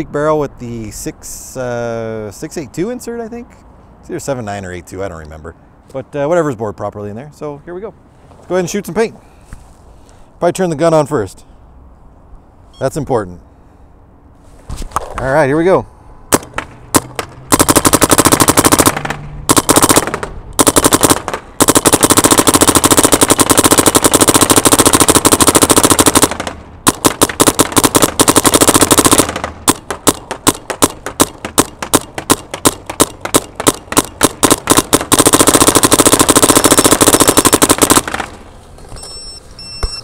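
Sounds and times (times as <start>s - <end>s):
paintball gun firing: 16.3s - 38.4s.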